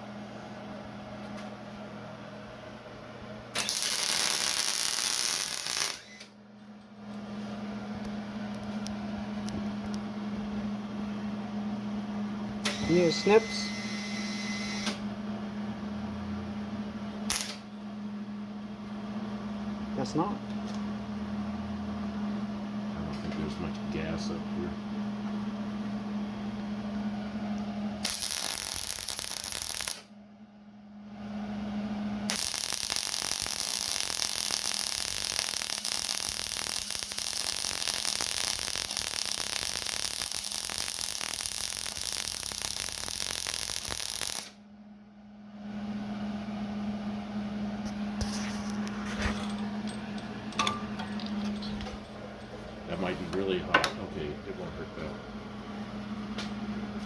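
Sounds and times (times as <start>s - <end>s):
welder electrical hum: 0.0s - 57.0s
welder arc crackling: 3.6s - 6.3s, 12.7s - 13.4s, 17.3s - 17.6s, 28.0s - 30.1s, 32.3s - 44.6s.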